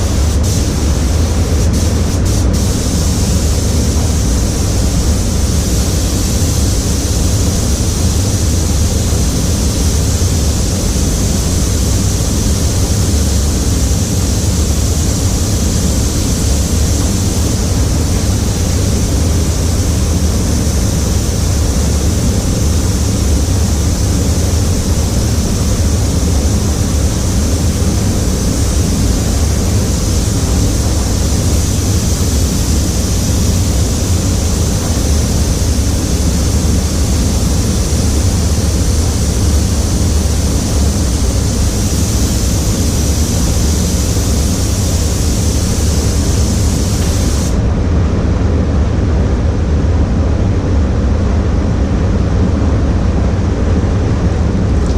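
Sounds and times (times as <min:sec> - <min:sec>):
spray gun air hissing: 0:00.0 - 0:47.6
ventilation rumble: 0:00.0 - 0:54.9.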